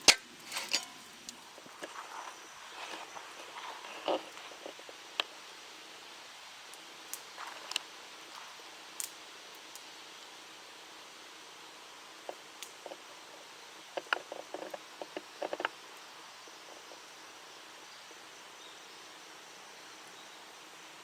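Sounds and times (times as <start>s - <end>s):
steady low hiss: 0.0s - 21.0s.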